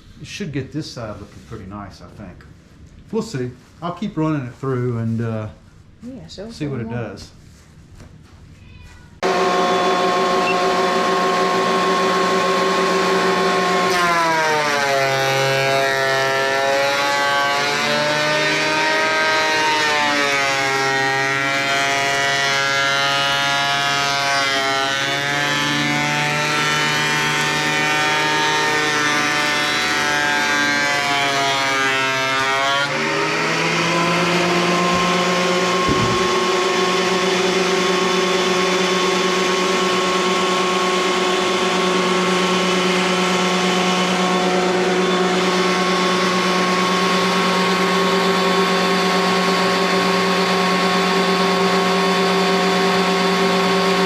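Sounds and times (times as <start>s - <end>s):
thickness planer running: 9.2s - 54.0s
short knock: 35.9s - 36.4s.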